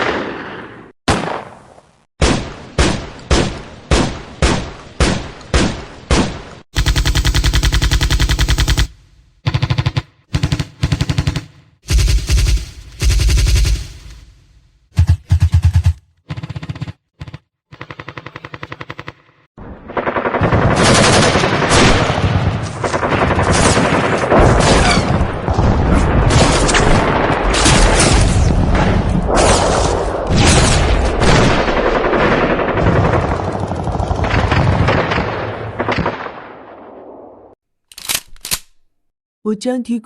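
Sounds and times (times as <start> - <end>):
machine-gun burst: 6.8 - 14.3, 19.9 - 25.2.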